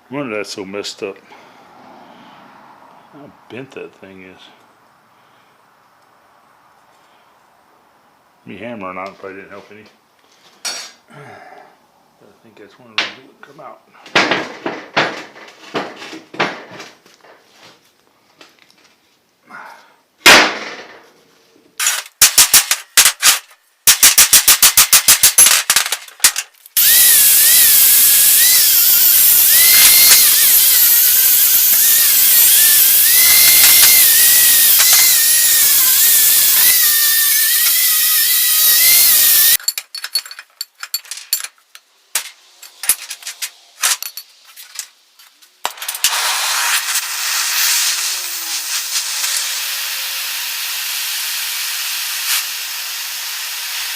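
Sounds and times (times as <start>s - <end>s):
power tool whining: 25.8s - 39.6s, 46.1s - 53.9s
hiss: 26.8s - 39.6s, 46.0s - 53.9s.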